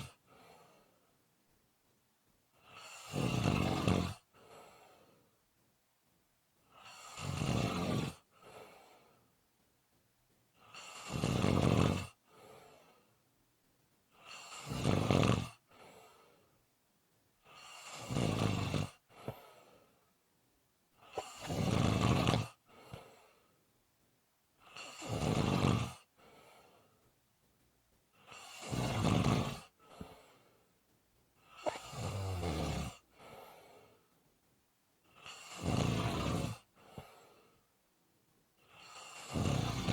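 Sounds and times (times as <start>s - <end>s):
soft breath sound: 0.0s - 1.3s, 2.5s - 5.4s, 7.8s - 9.4s, 12.1s - 13.3s, 15.6s - 16.7s, 19.0s - 20.2s, 21.0s - 23.7s, 24.6s - 27.2s, 28.1s - 30.8s, 31.4s - 34.3s, 35.0s - 37.8s
person snoring: 2.6s - 4.2s, 6.8s - 8.2s, 10.7s - 12.2s, 14.2s - 15.6s, 17.5s - 19.5s, 21.0s - 23.0s, 24.7s - 26.1s, 28.2s - 30.2s, 31.4s - 33.7s, 35.2s - 37.3s, 38.7s - 39.9s.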